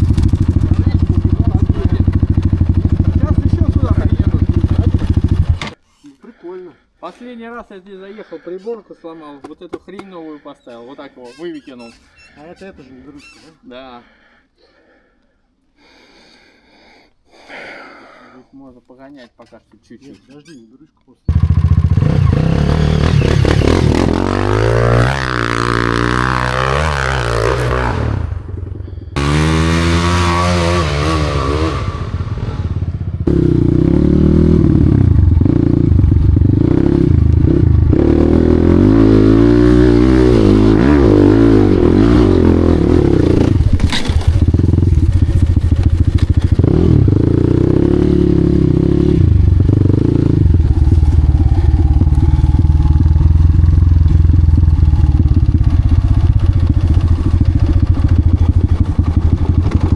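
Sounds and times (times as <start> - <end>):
dirt bike engine revving: 0.0 - 5.8, 21.3 - 59.9.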